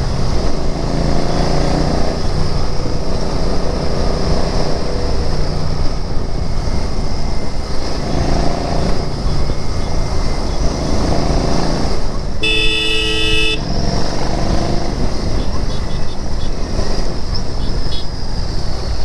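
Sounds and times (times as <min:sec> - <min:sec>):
city traffic: 0:00.0 - 0:19.0
motorcycle engine running: 0:04.9 - 0:18.6.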